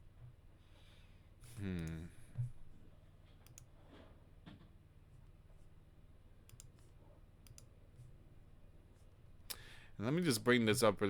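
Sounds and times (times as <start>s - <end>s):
faint steady hum: 0.0s - 11.0s
computer mouse clicks: 3.4s - 3.7s, 6.5s - 7.7s.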